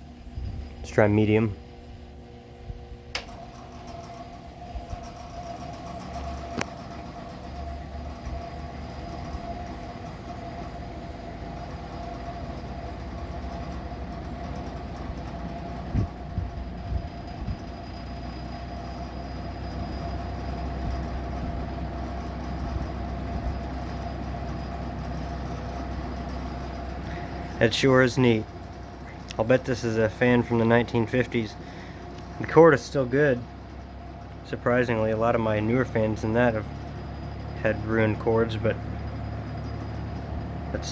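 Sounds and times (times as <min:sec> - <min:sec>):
box fan motor hum: 0:00.0 - 0:40.9
sharp click: 0:03.1 - 0:03.4.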